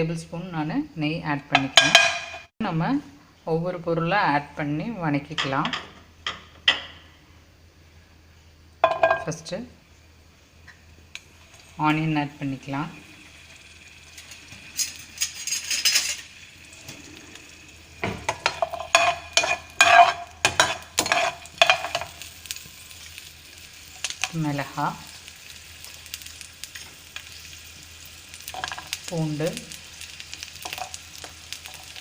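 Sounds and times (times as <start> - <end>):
onions sizzling in a pan: 7.8 - 32.0
spatula clattering against pan: 18.2 - 22.1.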